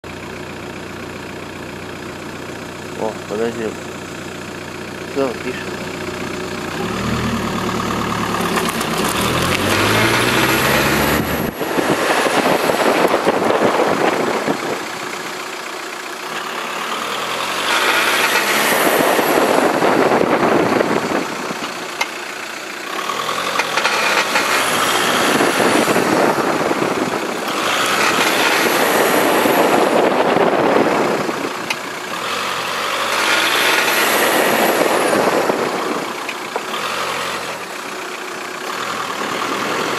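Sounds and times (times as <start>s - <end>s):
car engine running: 0.0s - 39.9s
car front end creaking and grinding: 6.8s - 14.5s, 23.2s - 37.6s.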